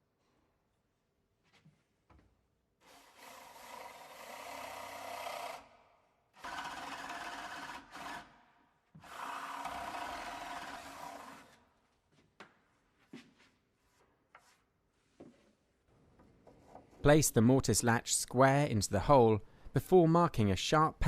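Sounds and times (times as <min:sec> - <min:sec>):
power drill boring into wood: 0:02.8 - 0:05.7, 0:06.4 - 0:08.3, 0:09.0 - 0:11.6.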